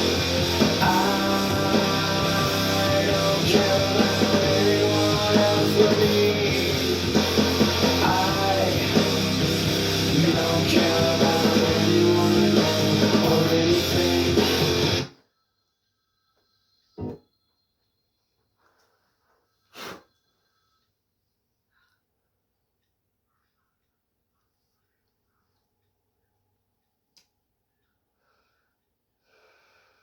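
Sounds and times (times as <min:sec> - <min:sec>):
rock music with guitar and singing: 0:00.0 - 0:15.1.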